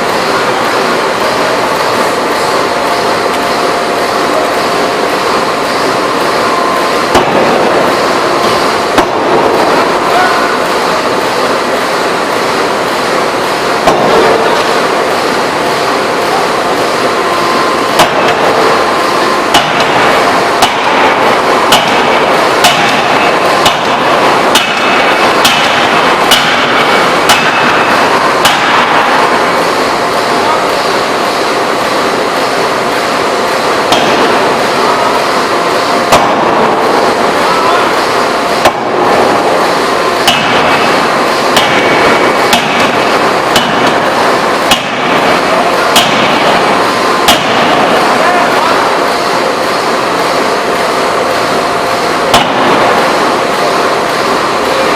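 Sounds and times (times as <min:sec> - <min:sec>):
forging hammer blows: 0:00.0 - 0:54.9
loud background noise: 0:00.0 - 0:54.9
loud machinery noise: 0:00.0 - 0:54.9
forging hammer striking metal: 0:17.4 - 0:29.7, 0:33.8 - 0:35.3, 0:36.0 - 0:37.7, 0:38.5 - 0:48.2, 0:52.3 - 0:53.2.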